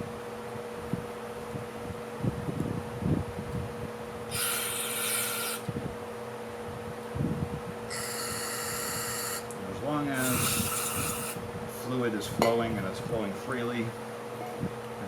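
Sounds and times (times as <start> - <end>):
faint steady hum: 0.0 - 15.0
hissing spray blasts: 10.2 - 11.4.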